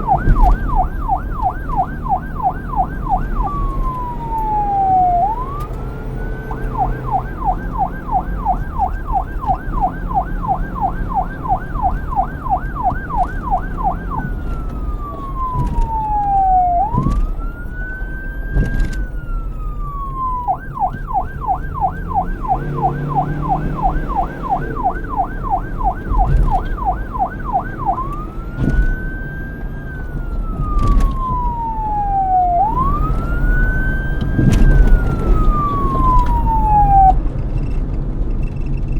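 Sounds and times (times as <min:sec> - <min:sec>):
police siren wail and yelp: 0:00.0 - 0:37.3.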